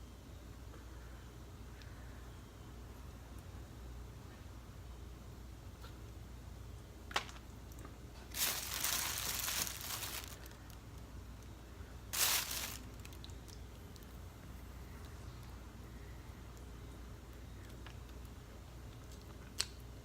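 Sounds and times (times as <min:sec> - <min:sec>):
crinkling and crunching: 0:07.1 - 0:10.9, 0:12.1 - 0:14.2.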